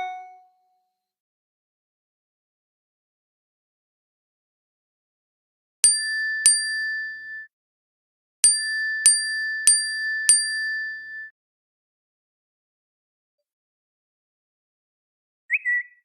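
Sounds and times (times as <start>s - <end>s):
bell-like notification chime: 0.0s - 0.5s.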